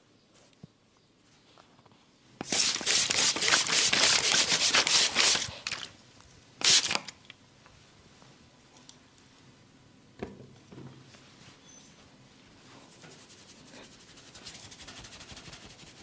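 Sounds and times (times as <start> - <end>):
hands rubbing scratchy friction: 2.4 - 5.5, 12.8 - 16.0.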